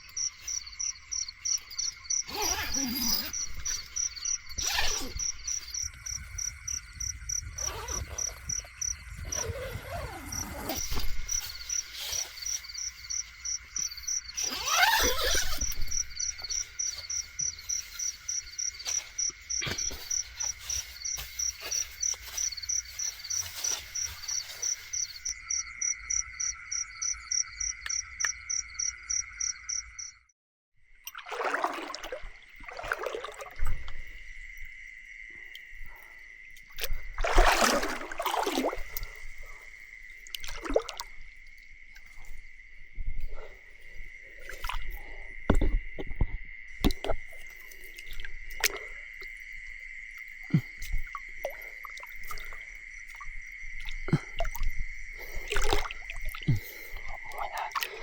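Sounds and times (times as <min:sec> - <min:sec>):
high insect drone: 0:00.0 - 0:30.2, 0:31.9 - 0:58.0
frogs: 0:00.0 - 0:58.0
short rushing water-like sounds: 0:31.1 - 0:33.9, 0:37.2 - 0:39.2.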